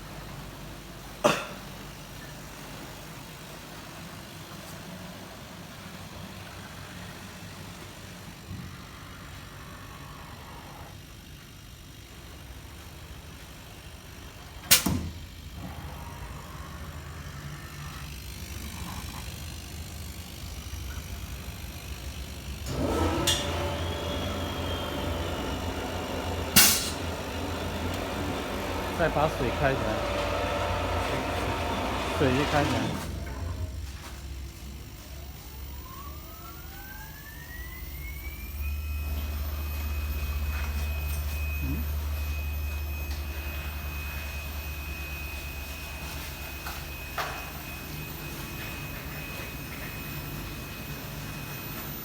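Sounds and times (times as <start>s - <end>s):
machine low hum: 0.0s - 52.0s
motor spinning up: 15.2s - 33.8s, 34.4s - 52.0s.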